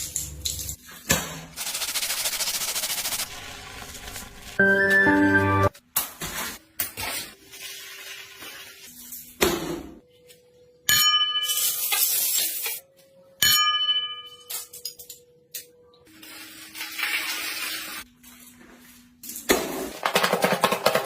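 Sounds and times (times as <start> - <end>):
ringing metal strikes: 13.4 - 14.7
knocks and clatter: 19.5 - 21.0.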